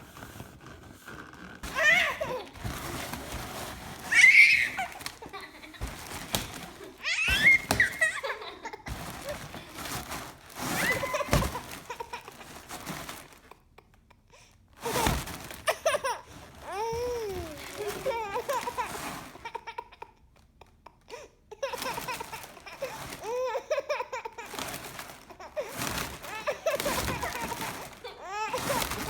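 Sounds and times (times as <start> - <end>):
baby squealing and giggling: 1.6 - 2.8, 3.9 - 9.6.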